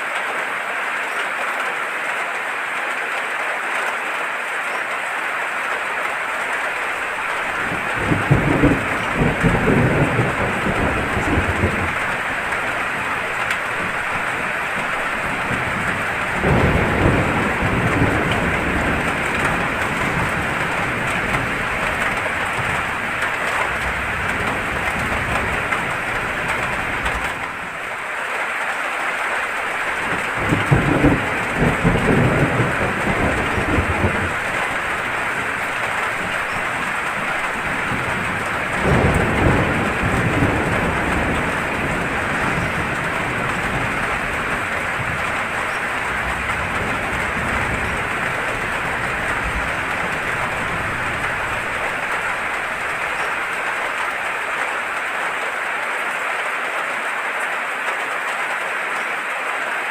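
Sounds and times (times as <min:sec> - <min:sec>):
heavy rain hissing: 0:00.0 - 0:59.9
thunder rumbling: 0:06.6 - 0:28.0, 0:29.4 - 0:55.1.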